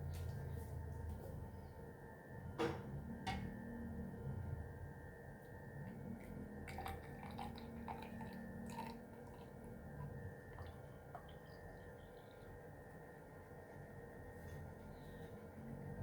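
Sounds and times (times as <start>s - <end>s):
liquid dripping: 5.9s - 13.3s.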